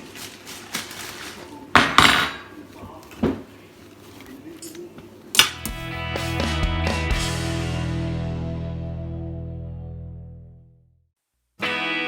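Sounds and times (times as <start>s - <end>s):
dishes and utensils clattering: 1.8s - 2.6s.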